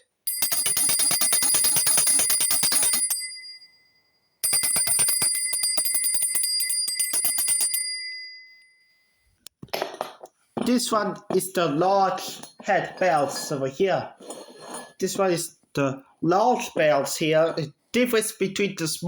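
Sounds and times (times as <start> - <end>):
handbell ringing: 0.3 - 9.1.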